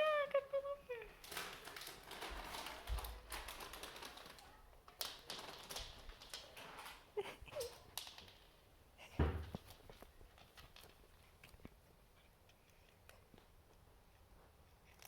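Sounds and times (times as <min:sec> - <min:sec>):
cat crunching kibble: 0:09.5 - 0:15.0.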